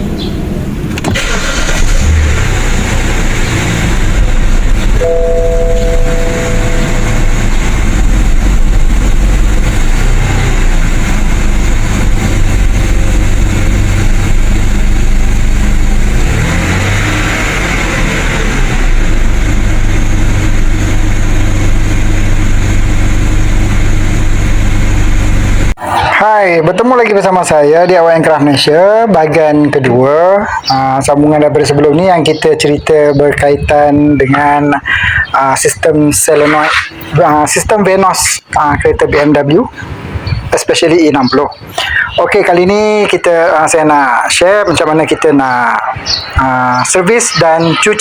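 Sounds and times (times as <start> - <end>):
car engine running: 0.6 - 25.8
two-note tone: 5.0 - 7.5.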